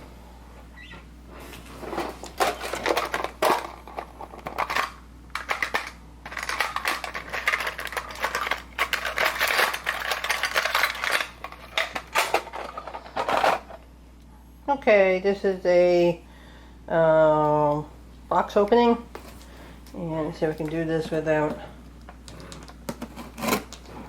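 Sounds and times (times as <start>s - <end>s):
packaging rustling and clicking: 2.0s - 13.7s.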